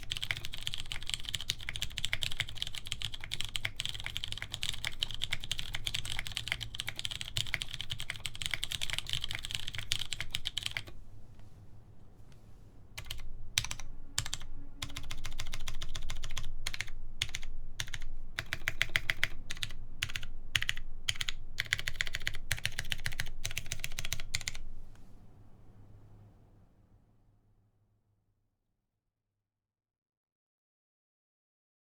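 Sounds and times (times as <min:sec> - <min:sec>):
typing on mechanical keyboard: 0:00.0 - 0:11.0, 0:13.0 - 0:24.6.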